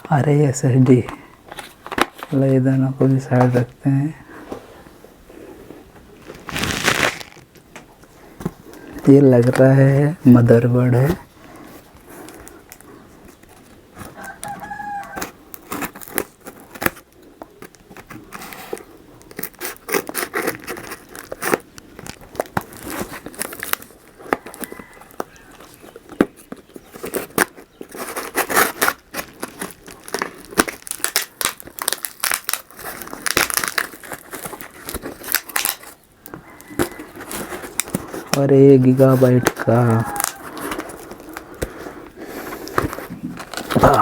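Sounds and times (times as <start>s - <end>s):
cardboard and plastic tearing: 6.2s - 7.6s, 12.3s - 44.0s.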